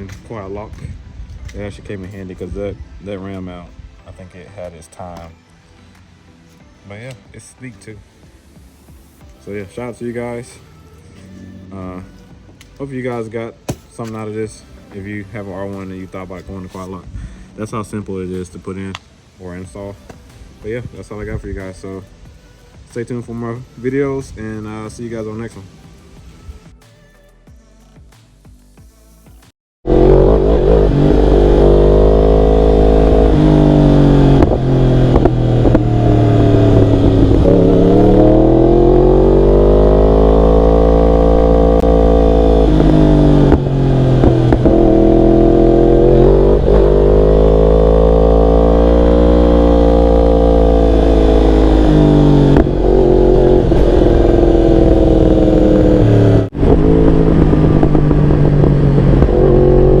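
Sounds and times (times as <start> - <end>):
wind rumble: 0.0 - 4.2, 29.9 - 60.0
motorcycle engine accelerating: 29.8 - 60.0.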